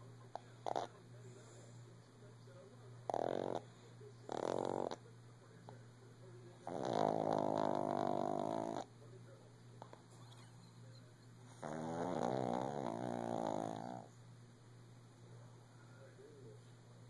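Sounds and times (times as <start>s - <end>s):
dog snoring: 0.3s - 1.8s, 3.0s - 5.0s, 6.5s - 8.9s, 11.4s - 14.2s.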